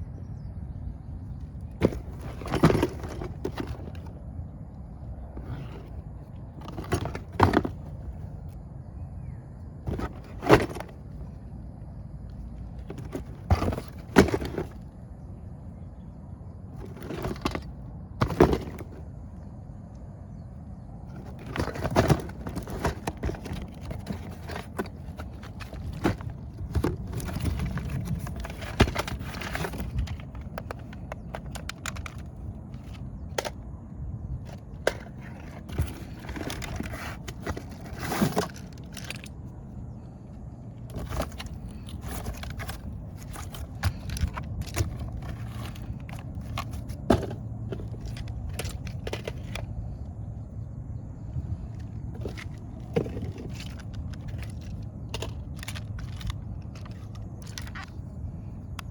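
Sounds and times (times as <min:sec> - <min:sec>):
packaging rustling and crackling: 0:21.1 - 0:33.6, 0:34.5 - 0:39.3, 0:40.9 - 0:49.7, 0:52.0 - 0:58.0.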